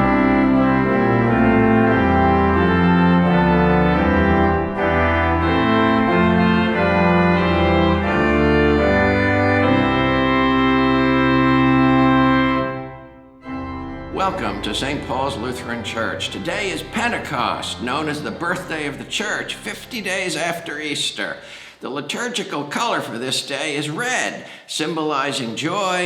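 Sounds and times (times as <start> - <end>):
organ playing sustained chords: 0.0 - 21.5.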